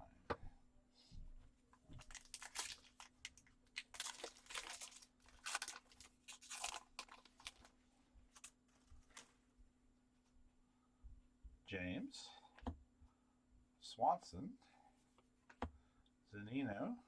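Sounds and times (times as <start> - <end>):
foil wrapper tearing and crinkling: 2.0 - 7.7.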